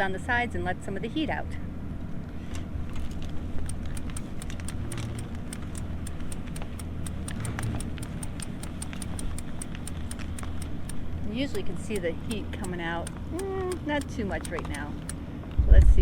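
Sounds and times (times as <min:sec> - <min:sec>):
steady low hum: 0:01.6 - 0:16.0
hand crank clicking: 0:03.6 - 0:15.2.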